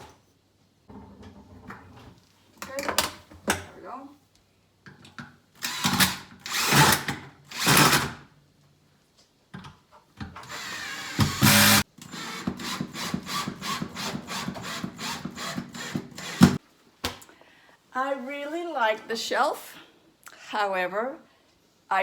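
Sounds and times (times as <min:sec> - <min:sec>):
drill rapid clicking: 0:05.6 - 0:08.2, 0:10.4 - 0:16.6
power drill driving screws: 0:05.6 - 0:08.2, 0:10.4 - 0:16.6.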